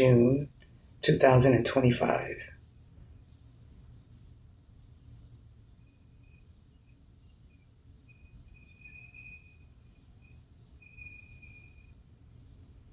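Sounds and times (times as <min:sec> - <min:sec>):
faint high-pitched tone: 0:05.5 - 0:12.9.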